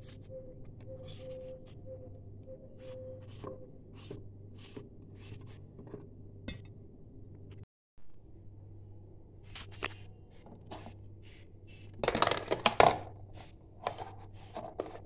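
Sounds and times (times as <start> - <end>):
steady low hum: 0.0 - 12.1
scraping and rustling: 9.4 - 15.0.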